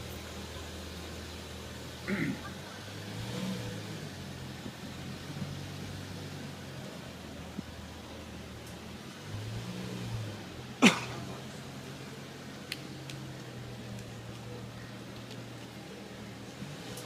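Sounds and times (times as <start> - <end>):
car engine idling: 0.0 - 17.0
faint clicks: 12.7 - 14.5, 15.1 - 15.7.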